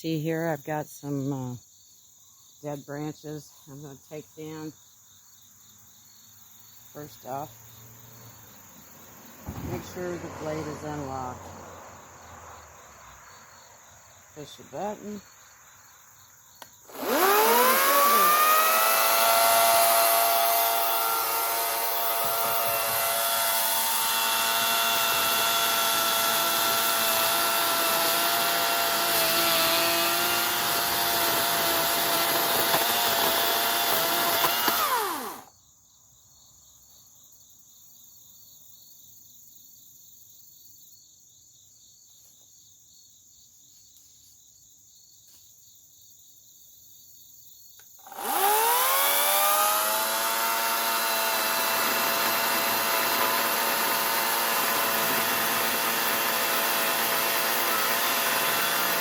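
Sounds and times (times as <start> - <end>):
battery chainsaw motor whining: 9.4 - 11.5, 16.6 - 35.5, 48.0 - 59.0.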